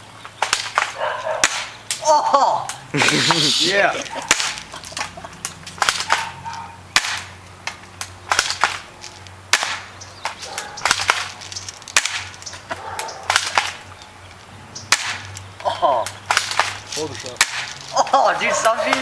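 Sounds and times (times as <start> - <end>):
airsoft gun shots: 0.4 - 2.0, 4.2 - 4.7, 5.8 - 7.4, 8.2 - 8.9, 9.5 - 12.4, 13.2 - 13.9, 14.9 - 15.3, 16.2 - 17.8.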